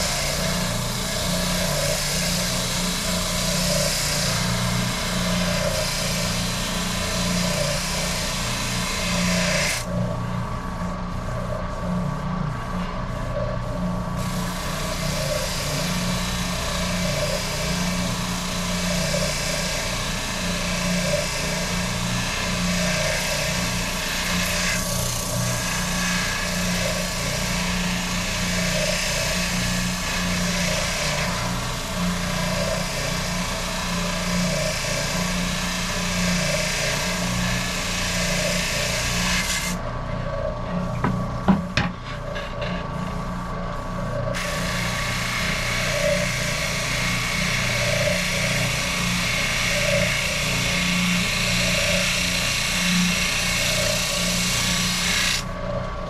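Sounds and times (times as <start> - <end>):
sander hissing on wood: 0.0 - 55.7
power sander motor hum: 0.0 - 56.0.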